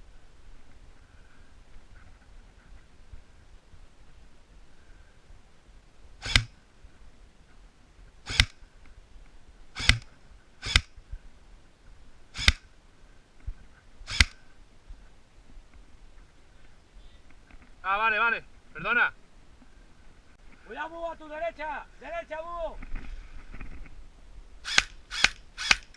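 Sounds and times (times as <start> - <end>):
airsoft gun shots: 8.3 - 8.6, 9.8 - 10.9, 24.7 - 25.9.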